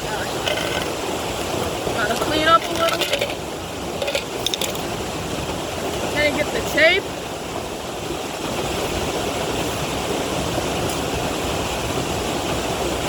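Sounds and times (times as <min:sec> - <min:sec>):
creek water rushing: 0:00.0 - 0:13.0.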